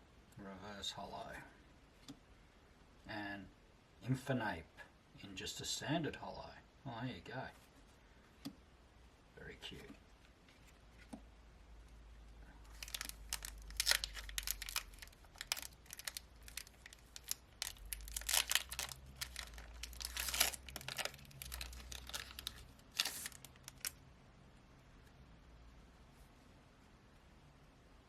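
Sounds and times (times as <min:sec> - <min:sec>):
foil wrapper tearing and crinkling: 0:12.7 - 0:24.0.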